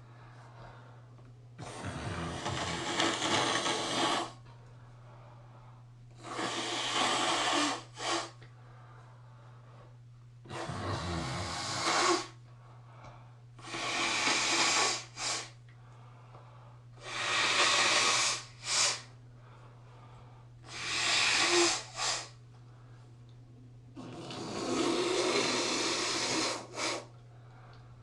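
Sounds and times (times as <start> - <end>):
person blowing nose: 1.6 - 4.4, 6.2 - 8.4, 10.5 - 12.4, 13.6 - 15.6, 17.0 - 19.1, 20.7 - 22.4, 24.0 - 27.1.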